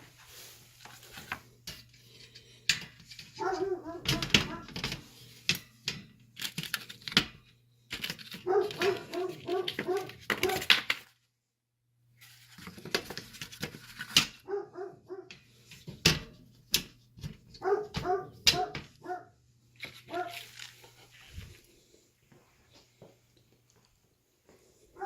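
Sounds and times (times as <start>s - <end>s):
dogs barking and whining: 3.4s - 5.0s, 8.4s - 10.7s, 14.4s - 15.4s, 17.6s - 19.4s, 20.1s - 20.5s.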